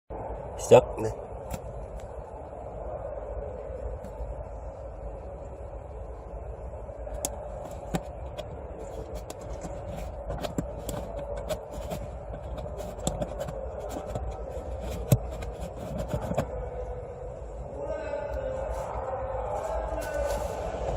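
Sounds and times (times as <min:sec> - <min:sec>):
steady background hum: 0:00.1 - 0:20.9
plastic parts clicking and scraping: 0:07.2 - 0:16.6.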